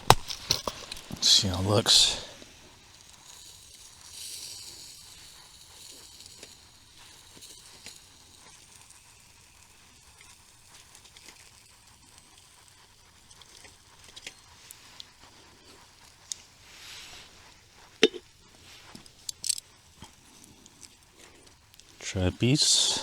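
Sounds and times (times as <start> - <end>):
meat sizzling on a grill: 1.2 - 17.9.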